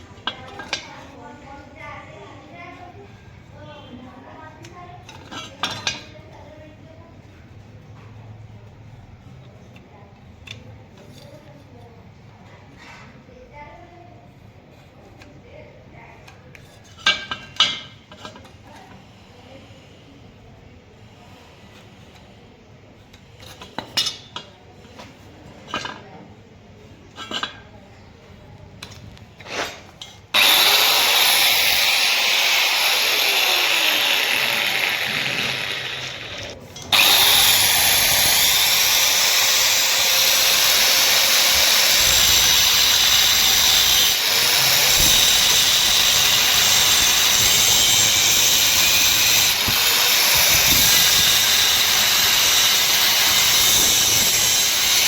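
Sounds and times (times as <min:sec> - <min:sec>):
metalworking rushing noise: 0:30.4 - 0:55.0.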